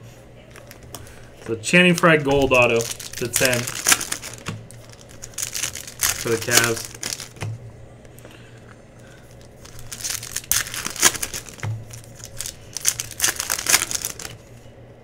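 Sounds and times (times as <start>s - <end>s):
plastic wrappers crinkling: 0.5s - 14.6s.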